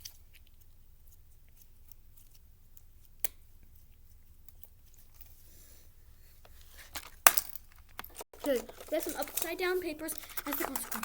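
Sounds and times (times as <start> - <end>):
fidget toys clicking: 7.9 - 11.0.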